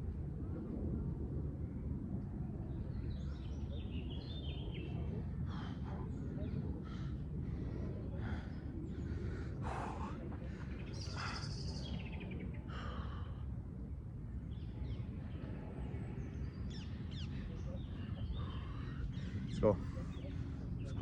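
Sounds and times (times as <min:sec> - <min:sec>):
low outdoor rumble: 0:00.0 - 0:21.0
birds calling: 0:05.4 - 0:13.5, 0:16.2 - 0:21.0.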